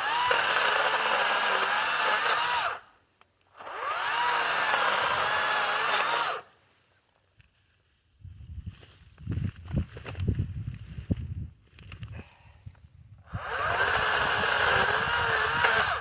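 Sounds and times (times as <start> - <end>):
electric chainsaw whining: 0.0 - 2.9, 3.5 - 6.5, 13.3 - 16.0.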